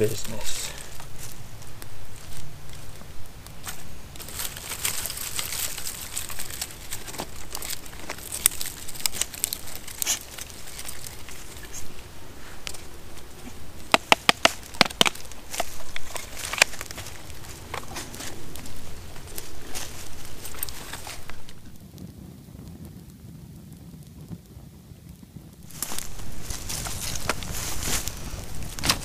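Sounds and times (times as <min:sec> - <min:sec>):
campfire crackling: 0:00.0 - 0:29.0
sharp pops and snaps: 0:12.6 - 0:19.7, 0:25.5 - 0:29.0.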